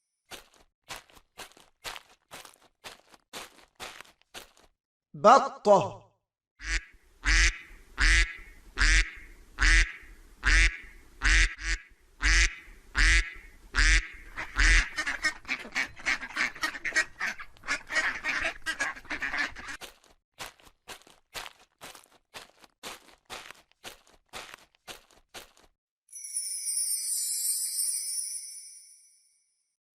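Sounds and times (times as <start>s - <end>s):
duck quacking: 6.6s - 19.8s.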